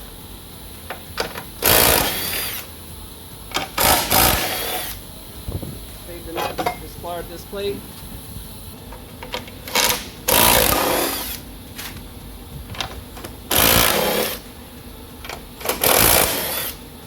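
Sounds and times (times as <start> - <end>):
power tool rattling: 0.9 - 2.7, 3.5 - 5.0, 9.2 - 12.0, 12.7 - 14.5, 15.2 - 16.8.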